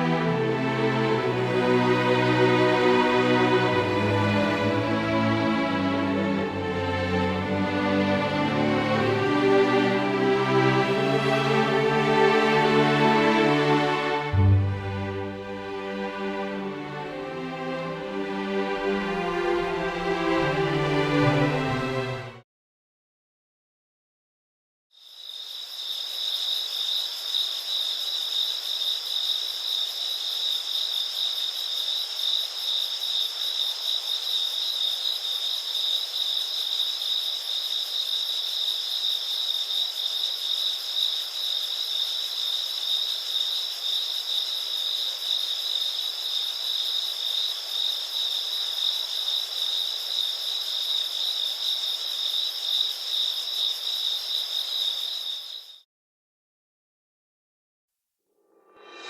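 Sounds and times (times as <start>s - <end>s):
insects chirping: 25.0s - 55.8s.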